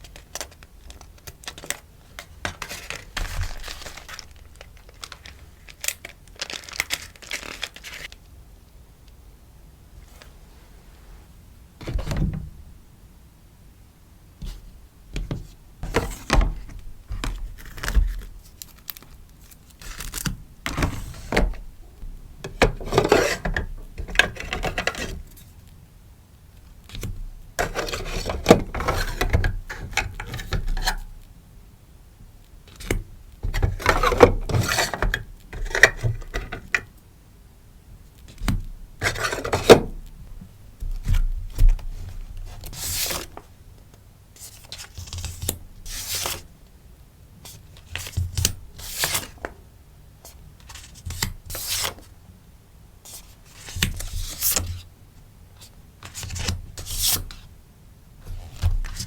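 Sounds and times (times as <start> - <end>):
packaging rustling and crinkling: 0.0 - 8.2, 15.8 - 21.8.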